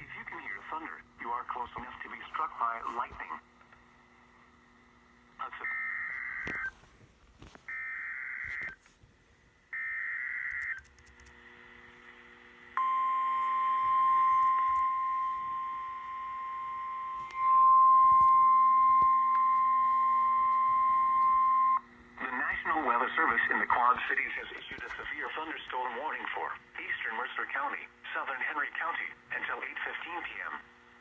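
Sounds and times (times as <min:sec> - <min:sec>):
steady warning alarm tone: 0:05.6 - 0:06.8, 0:12.8 - 0:24.4.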